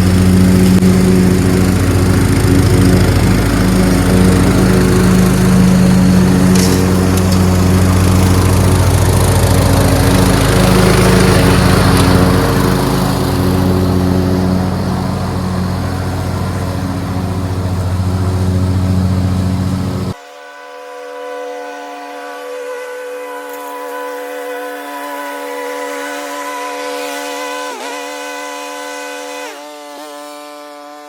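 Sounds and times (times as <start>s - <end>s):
lawn tractor engine running: 0.0s - 20.2s.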